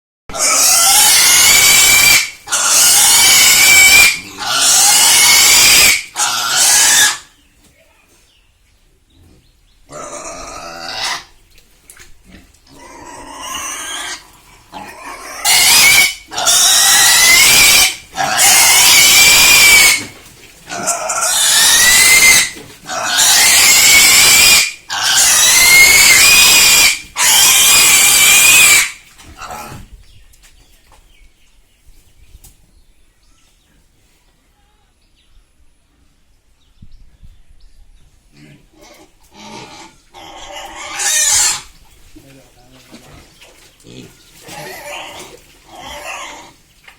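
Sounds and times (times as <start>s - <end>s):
pig grunting: 0.3s - 7.3s, 9.2s - 11.4s, 12.2s - 29.9s, 38.3s - 41.7s, 42.8s - 46.6s
pig squealing loudly: 0.3s - 7.3s, 9.9s - 11.3s, 12.3s - 29.8s, 38.8s - 41.7s, 43.9s - 46.6s.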